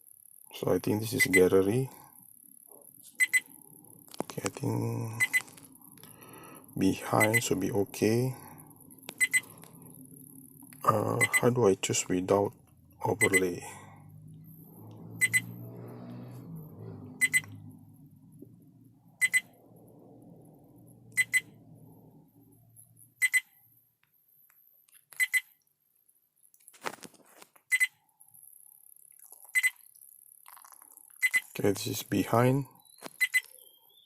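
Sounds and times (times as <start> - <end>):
dash camera double beep: 1.0 - 1.5, 3.2 - 3.6, 5.1 - 5.5, 7.2 - 7.5, 9.1 - 9.6, 11.0 - 11.6, 13.0 - 13.4, 15.2 - 15.5, 17.2 - 17.6, 19.2 - 19.5, 21.1 - 21.6, 23.2 - 23.5, 25.2 - 25.5, 27.7 - 27.9, 29.6 - 29.8, 32.8 - 33.7.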